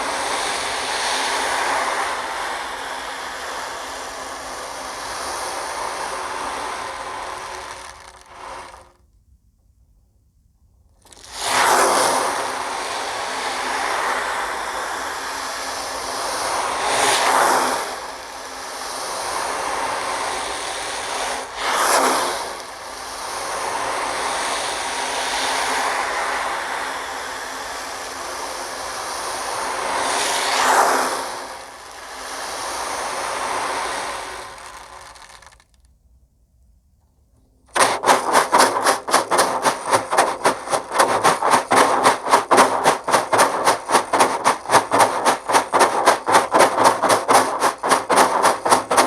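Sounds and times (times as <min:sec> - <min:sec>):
ocean drum beads rolling: 0:05.9 - 0:09.0, 0:11.0 - 0:12.1, 0:34.0 - 0:35.7, 0:37.7 - 0:49.0.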